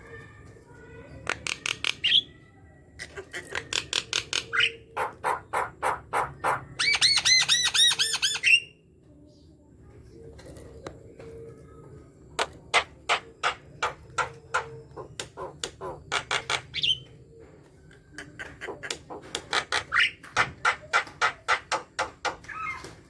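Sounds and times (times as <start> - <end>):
bird harsh clicking calls: 12.4 - 17.0, 18.1 - 22.8.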